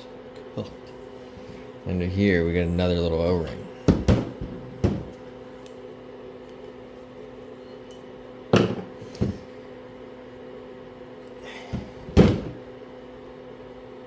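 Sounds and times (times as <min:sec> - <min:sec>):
steady low hum: 0:00.0 - 0:14.0
tools knocking on workbench: 0:03.9 - 0:05.2, 0:08.6 - 0:09.4.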